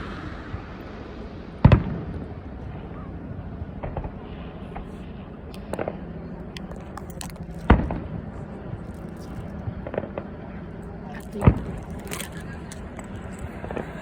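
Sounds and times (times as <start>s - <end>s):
fireworks booming: 0.0s - 3.0s, 3.8s - 6.0s
fireworks crackling: 11.1s - 14.0s.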